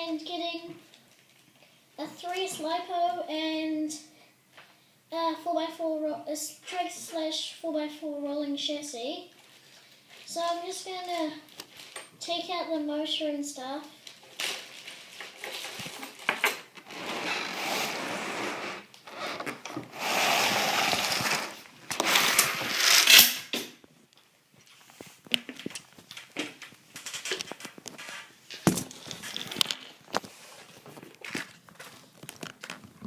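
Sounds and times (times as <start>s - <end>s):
plastic and metal parts clattering: 14.1s - 16.8s, 25.3s - 33.0s.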